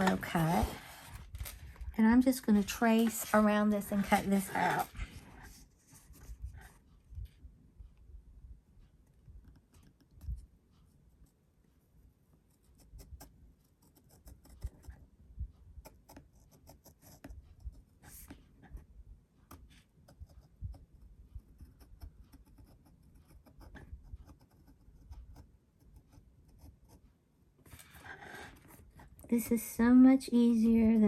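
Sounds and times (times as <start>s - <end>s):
craft knife scratching paper: 0.0s - 1.6s, 2.4s - 6.3s.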